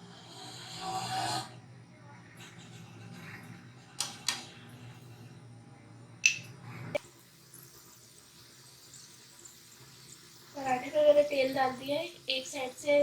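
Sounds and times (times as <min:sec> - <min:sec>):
frying oil hissing: 0:07.0 - 0:13.0.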